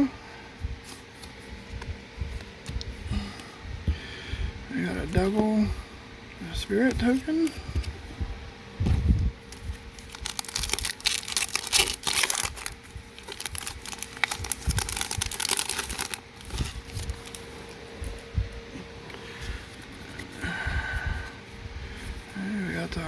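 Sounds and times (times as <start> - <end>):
foil wrapper crinkling and tearing: 9.5 - 17.8.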